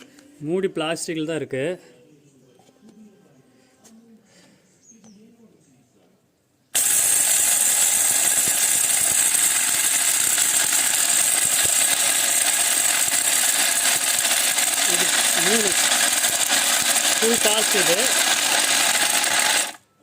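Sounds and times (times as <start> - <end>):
blades grinding dry load rattle: 6.8 - 19.8
mixer grinder whining: 6.8 - 19.9.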